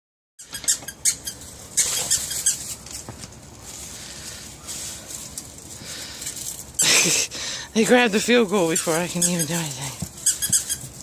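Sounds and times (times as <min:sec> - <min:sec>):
puppies squeaking: 0:00.4 - 0:03.0, 0:07.9 - 0:11.0.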